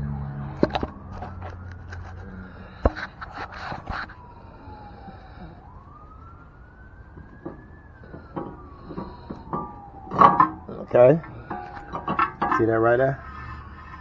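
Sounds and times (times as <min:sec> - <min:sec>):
faint siren wailing: 0:00.0 - 0:14.0.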